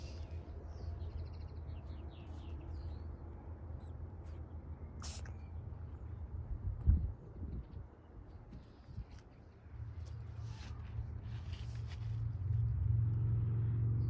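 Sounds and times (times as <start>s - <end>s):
low steady rumble: 0.0s - 14.0s
cat sneezing: 5.0s - 5.4s.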